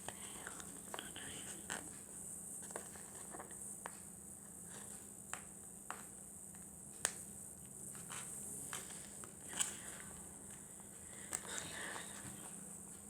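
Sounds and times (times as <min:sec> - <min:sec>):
faint hiss: 0:00.0 - 0:13.0
light sharp clicks: 0:10.5 - 0:12.6.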